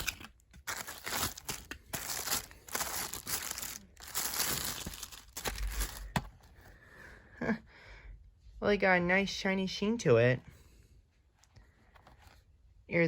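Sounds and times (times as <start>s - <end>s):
packaging crinkling and rustling: 0.0s - 6.6s.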